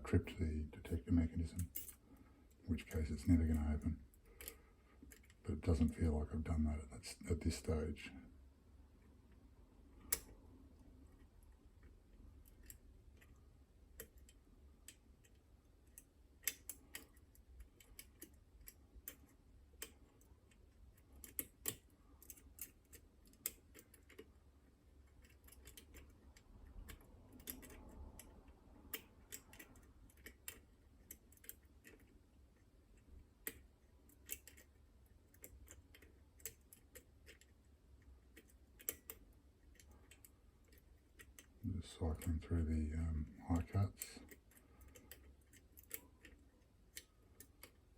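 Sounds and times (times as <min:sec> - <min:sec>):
lock picks clicking in a lock: 0:01.6 - 0:02.0, 0:12.4 - 0:13.4, 0:14.0 - 0:24.4, 0:25.0 - 0:32.1, 0:33.4 - 0:37.5, 0:38.2 - 0:42.4, 0:43.6 - 0:47.8.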